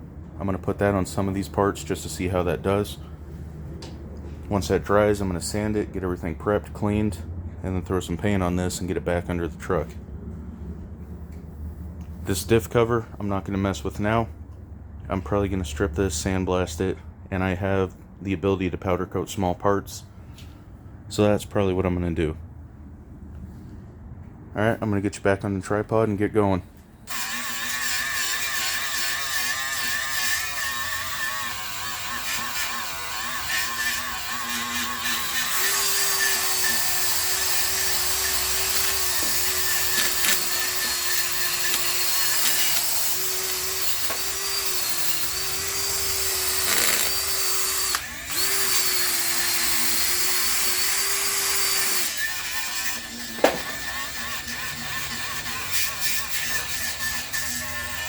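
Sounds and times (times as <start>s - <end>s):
power tool stripping rust: 27.1s - 58.0s.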